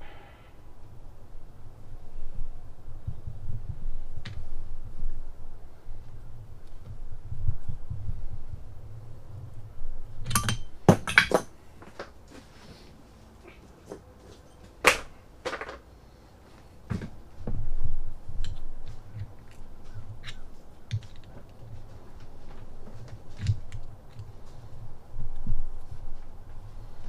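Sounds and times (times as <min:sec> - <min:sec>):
metal hand tools clinking: 0:10.3 - 0:11.5.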